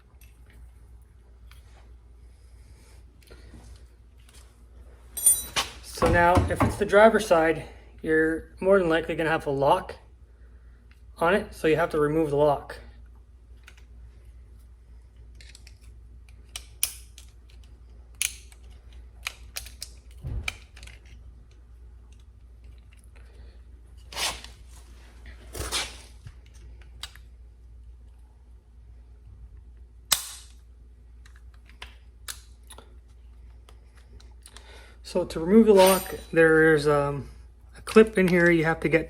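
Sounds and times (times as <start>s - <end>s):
parts scraping: 23.9s - 26.6s, 35.6s - 36.6s.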